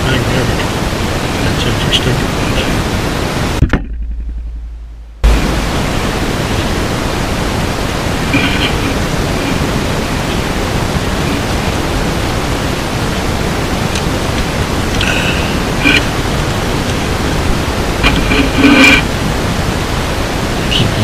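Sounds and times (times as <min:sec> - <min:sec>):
low hum: 0:00.0 - 0:21.0
fan blower rushing noise: 0:04.5 - 0:21.0.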